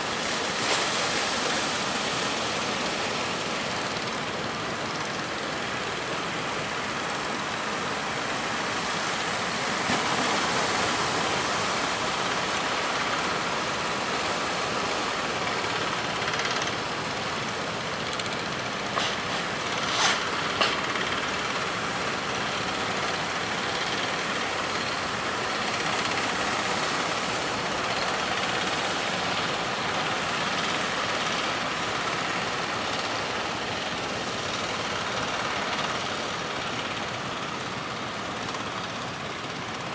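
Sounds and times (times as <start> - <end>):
sea waves breaking: 0.0 - 3.9, 6.9 - 30.3.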